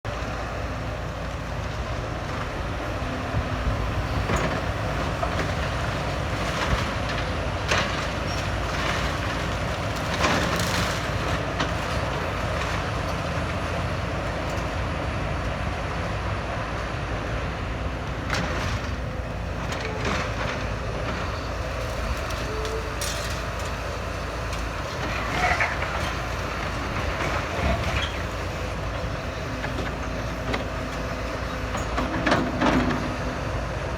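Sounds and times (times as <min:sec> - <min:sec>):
demolition machinery running: 0:00.1 - 0:33.9.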